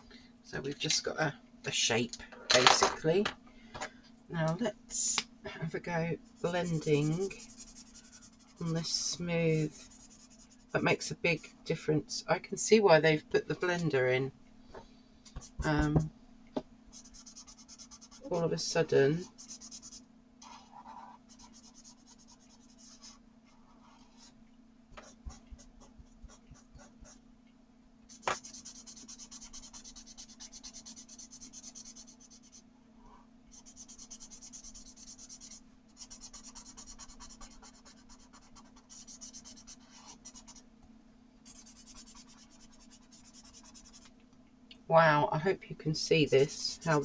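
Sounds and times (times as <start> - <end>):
faint steady hum: 0.0 - 47.0
pencil blender scratching paper: 6.4 - 9.0, 9.7 - 10.6, 16.9 - 18.4, 19.2 - 24.3, 25.0 - 27.2, 28.1 - 32.6, 33.5 - 40.6, 41.4 - 44.1, 46.2 - 47.0.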